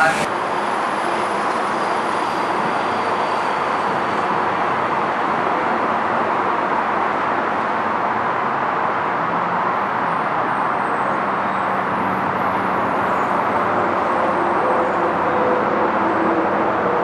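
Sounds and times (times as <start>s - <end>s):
electric train rolling: 0.0s - 6.2s.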